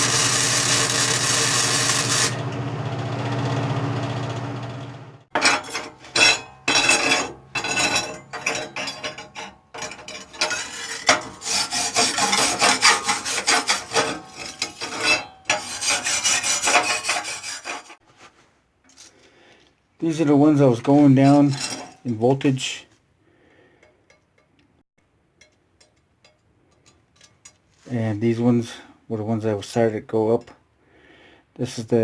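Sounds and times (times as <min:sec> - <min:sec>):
scraping and scrubbing metal: 0:00.0 - 0:02.5, 0:05.3 - 0:18.0, 0:20.8 - 0:22.4.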